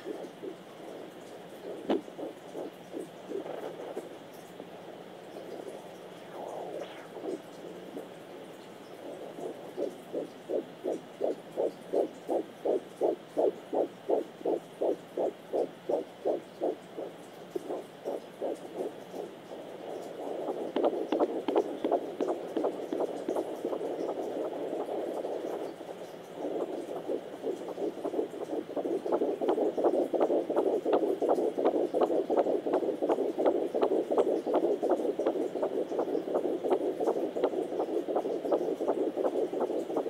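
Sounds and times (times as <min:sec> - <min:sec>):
fetal heartbeat whooshing pulse: 0:00.0 - 0:04.1, 0:05.7 - 0:40.0
hiss with scratchy crackles: 0:00.0 - 0:40.0.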